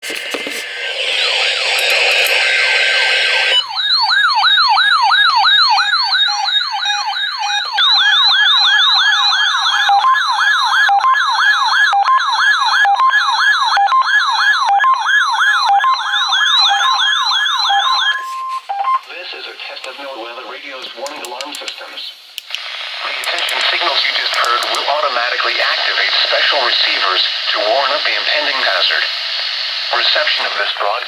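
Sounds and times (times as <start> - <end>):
warbling alarm tone: 0.0 - 18.6
second warbling alarm: 0.3 - 18.9.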